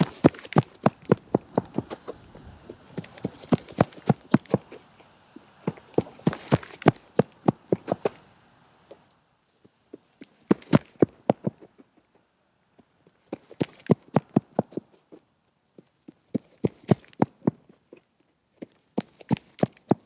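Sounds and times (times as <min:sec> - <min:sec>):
running footsteps on hard surface: 0:00.0 - 0:04.8, 0:05.4 - 0:08.2.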